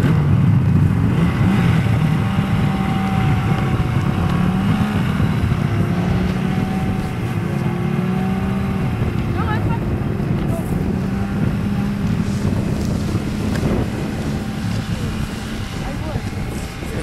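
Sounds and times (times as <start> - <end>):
snowmobile engine running: 0.0 - 17.0.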